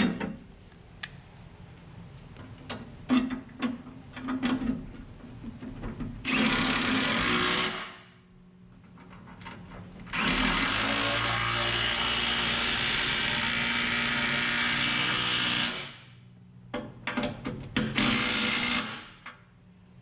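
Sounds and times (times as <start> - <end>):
impact wrench bursts: 18.0 - 19.2.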